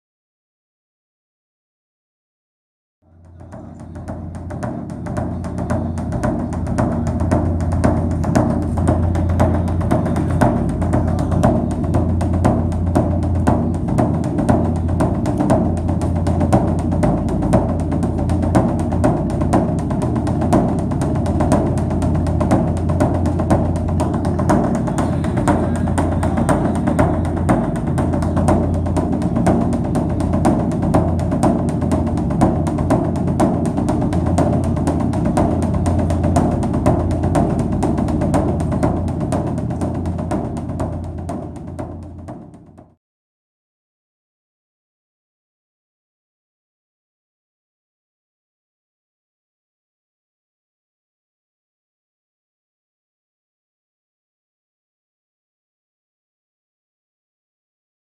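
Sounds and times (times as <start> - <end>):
low sustained drone: 3.1 - 40.2
quick percussive beat: 3.1 - 43.0.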